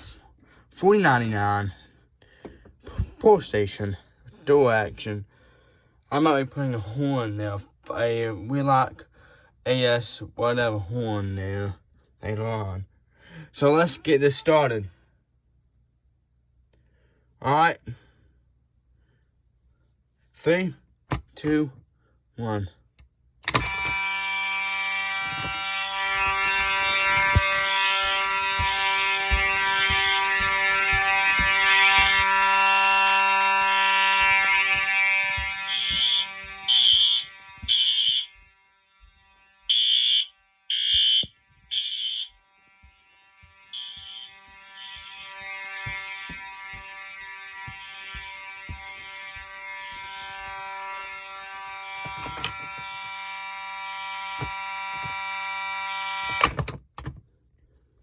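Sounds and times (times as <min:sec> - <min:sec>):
fire alarm horns: 0:23.4 - 0:57.1.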